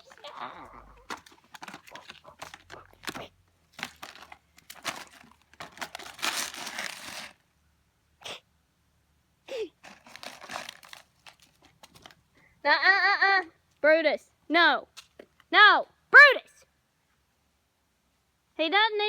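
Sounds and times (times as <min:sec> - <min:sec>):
puppy chewing crunching: 0:00.0 - 0:05.2
rustling: 0:00.0 - 0:07.5, 0:09.5 - 0:12.5.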